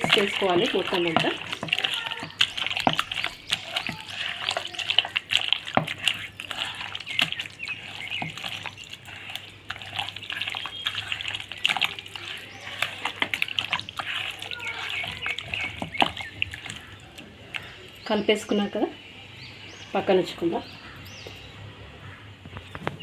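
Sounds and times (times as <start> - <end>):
hand squishing meat in marinade: 0.0 - 18.2.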